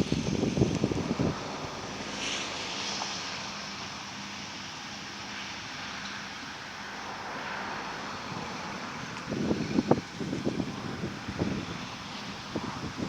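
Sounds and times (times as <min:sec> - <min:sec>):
diesel farm machinery running: 0:00.0 - 0:13.0.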